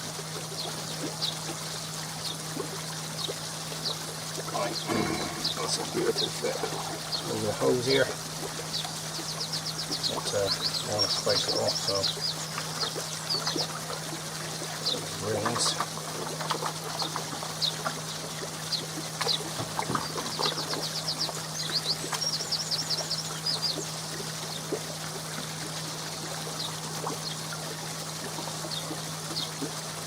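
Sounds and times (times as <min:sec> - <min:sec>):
water pouring and trickling: 0:00.0 - 0:30.0
low hum: 0:04.5 - 0:15.1
bird singing high notes: 0:04.7 - 0:06.4.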